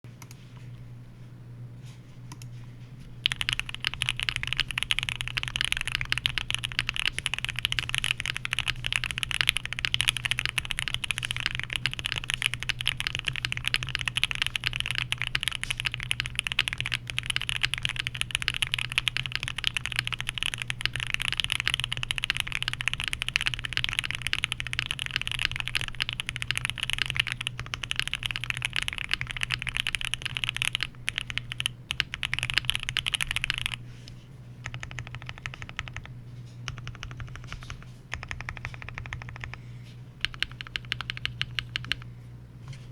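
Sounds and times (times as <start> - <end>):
low steady hum: 0.1 - 42.9
fast typing on mechanical keyboard: 3.2 - 33.8, 34.6 - 39.6, 40.2 - 42.1.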